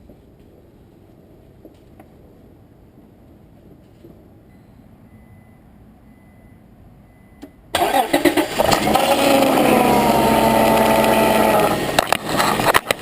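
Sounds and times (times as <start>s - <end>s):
car engine cranking and idling: 7.0s - 13.0s.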